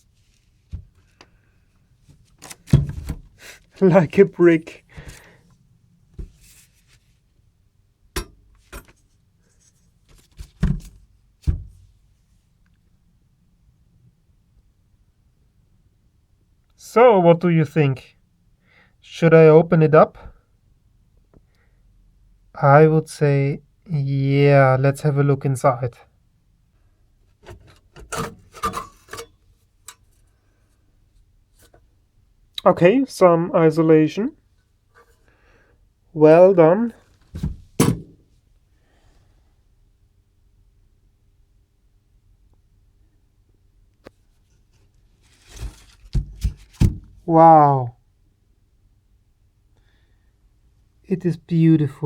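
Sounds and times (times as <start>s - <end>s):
hand tools scraping casing: 27.4s - 29.3s.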